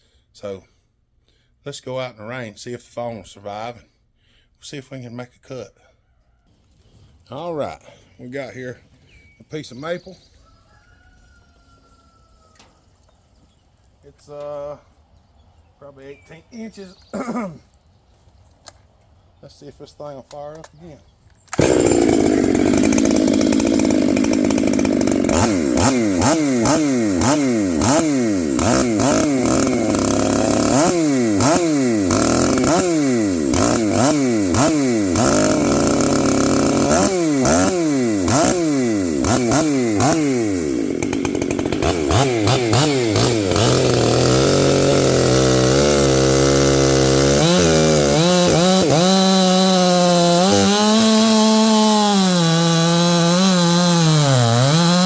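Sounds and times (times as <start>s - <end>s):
chainsaw engine revving: 21.5s - 55.0s.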